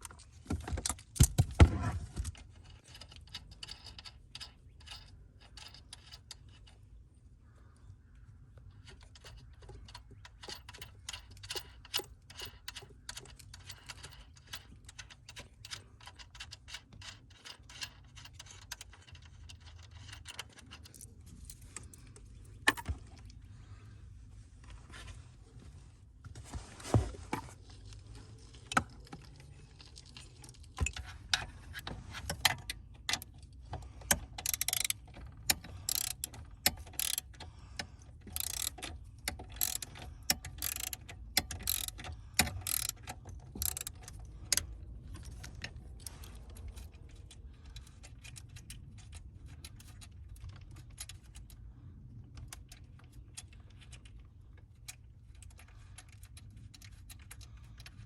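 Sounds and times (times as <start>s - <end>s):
low steady hum: 0.0s - 58.0s.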